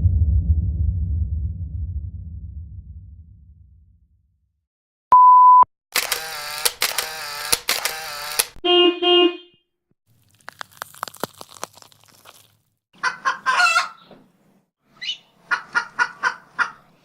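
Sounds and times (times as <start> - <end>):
censor bleep tone: 5.1 - 5.7
short pitched beeps: 5.1 - 5.7.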